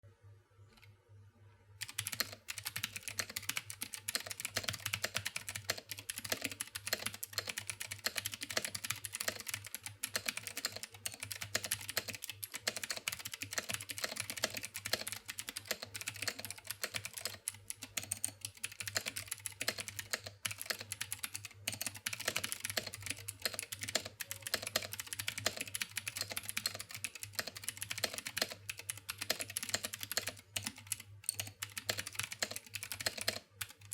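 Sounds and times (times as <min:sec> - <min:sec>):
mechanical keyboard typing: 0:01.8 - 0:33.9.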